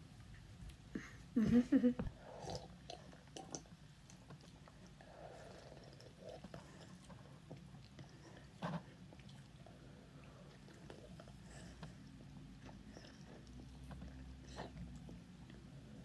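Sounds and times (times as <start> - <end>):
person gulping a drink: 2.0 - 4.9.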